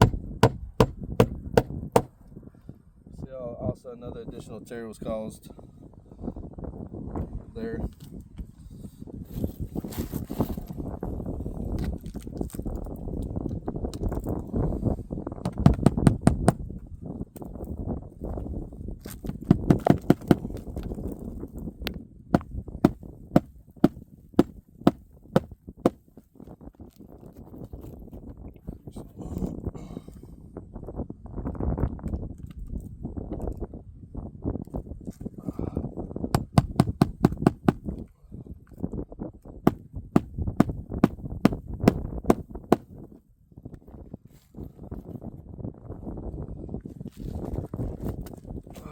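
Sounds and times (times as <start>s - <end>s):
hammer driving nails into shingles: 0.0s - 2.1s, 15.5s - 16.6s, 19.3s - 20.6s, 22.8s - 25.5s, 36.4s - 37.8s, 39.7s - 42.8s.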